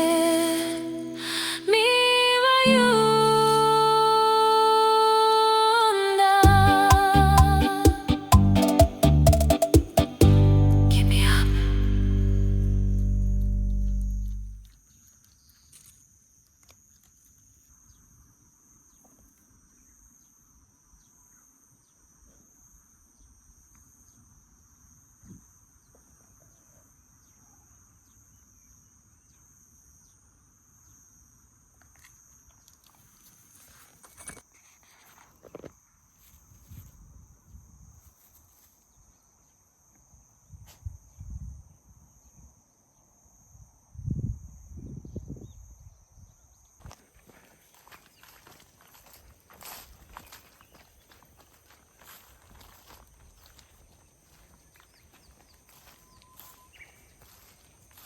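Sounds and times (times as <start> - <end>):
low thumps: 6.4 - 14.7
footsteps: 46.8 - 58.0.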